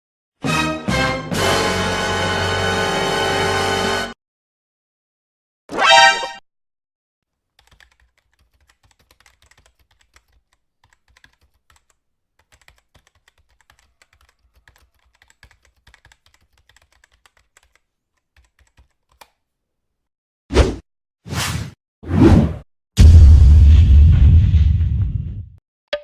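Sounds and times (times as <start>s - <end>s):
computer keyboard typing: 7.5s - 19.4s.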